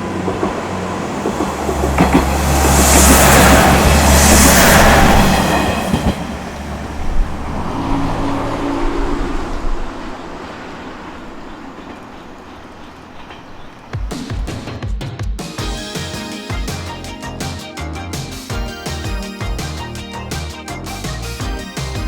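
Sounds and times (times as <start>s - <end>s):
train wheels on rails: 0.0s - 22.0s.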